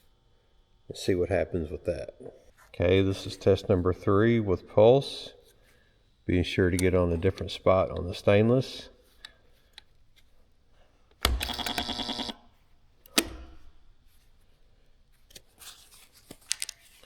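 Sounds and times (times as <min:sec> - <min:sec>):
spot welder electrical buzz: 0:11.2 - 0:12.5.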